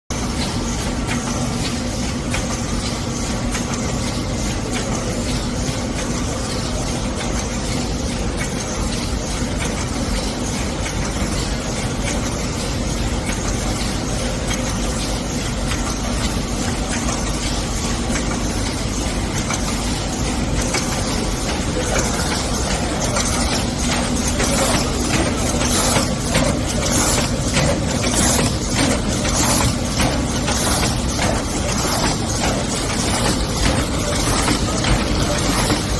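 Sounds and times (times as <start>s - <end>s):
machine clattering: 0.1s - 35.9s
machine hum: 0.1s - 35.9s.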